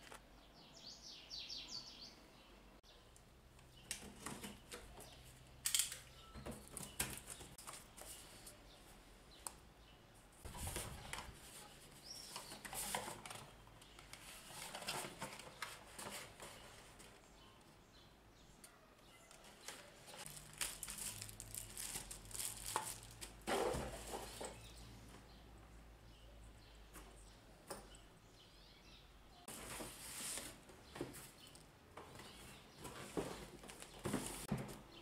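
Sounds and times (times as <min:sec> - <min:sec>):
plastic and cardboard crinkling: 0:10.5 - 0:17.2, 0:19.2 - 0:24.6, 0:29.5 - 0:34.8.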